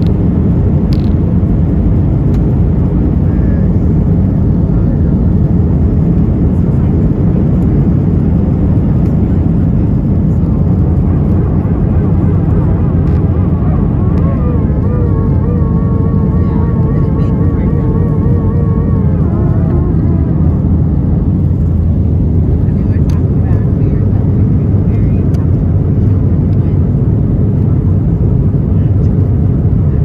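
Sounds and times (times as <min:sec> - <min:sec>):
aircraft cabin engine rush: 0:00.0 - 0:30.0
faint wavering voice: 0:11.4 - 0:21.6.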